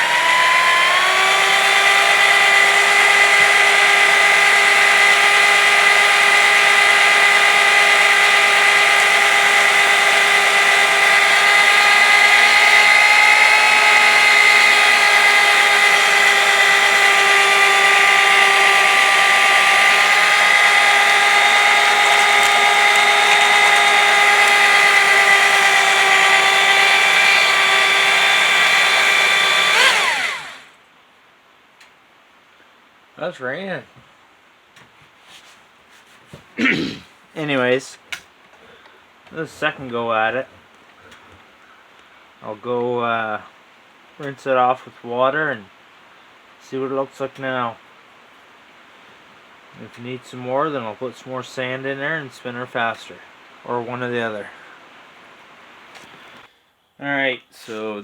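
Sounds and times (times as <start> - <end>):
electric motor whining: 0.0 - 30.7.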